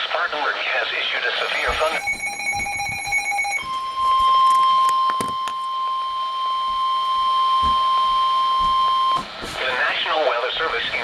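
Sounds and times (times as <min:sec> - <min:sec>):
steady alert tone: 0:01.5 - 0:04.5.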